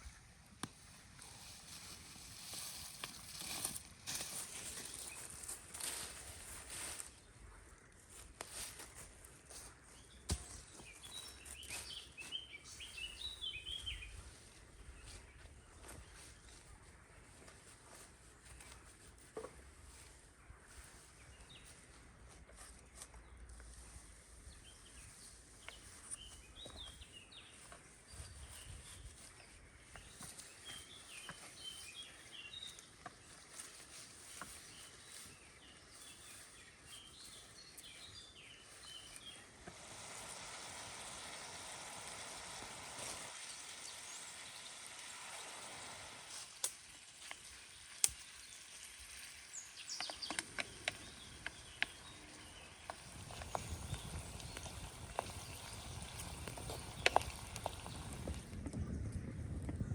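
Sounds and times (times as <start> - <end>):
forest ambience: 0.0 - 58.7
small birds chirping: 3.3 - 59.9
steady hiss: 38.7 - 58.4.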